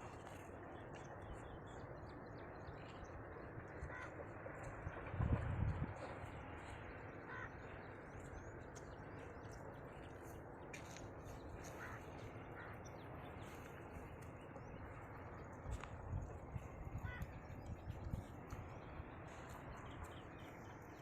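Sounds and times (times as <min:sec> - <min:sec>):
bird calls: 0:03.7 - 0:05.0, 0:06.0 - 0:15.9, 0:16.6 - 0:21.0.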